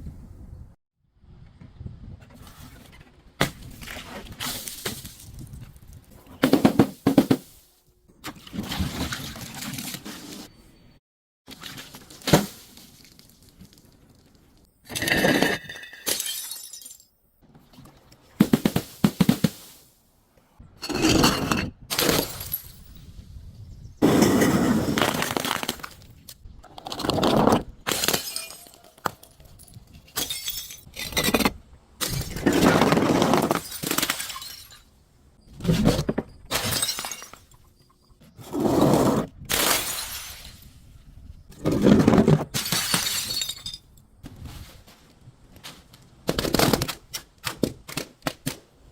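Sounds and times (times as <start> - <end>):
glass bottles breaking: 14.9 - 17.2, 21.0 - 22.9, 27.9 - 31.4, 33.4 - 34.9, 36.5 - 37.8, 39.5 - 40.8, 42.5 - 43.9.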